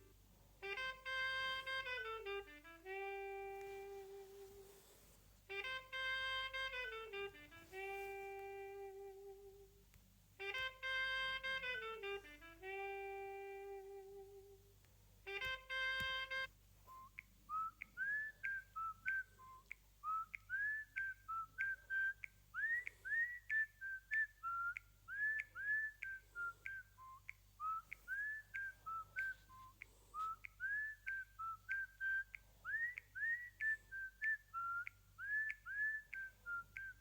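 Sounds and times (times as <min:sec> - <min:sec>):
whistled ringtone melody: 0:15.3 - 0:37.0.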